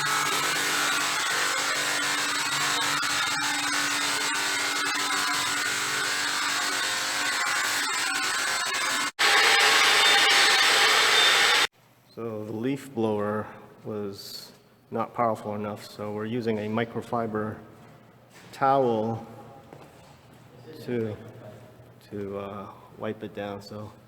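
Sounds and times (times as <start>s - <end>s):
pressure washer motor running: 0.0s - 11.7s.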